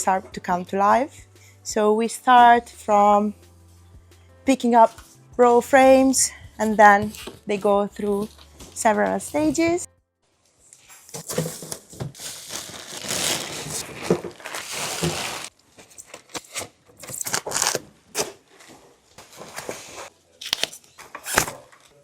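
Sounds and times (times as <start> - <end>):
packaging wrap crinkling and tearing: 11.1 - 18.3, 19.4 - 21.7.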